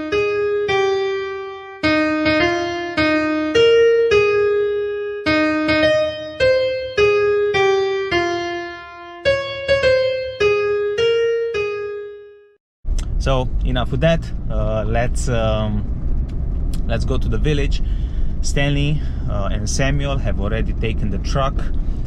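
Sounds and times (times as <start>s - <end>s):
solo piano melody: 0.0s - 12.6s.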